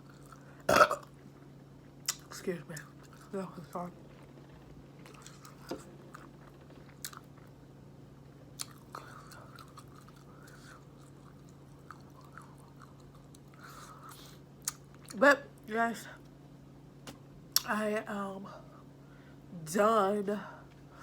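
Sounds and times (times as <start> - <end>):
faint chewing of food: 0.0 - 3.4, 4.1 - 7.6, 8.5 - 15.2.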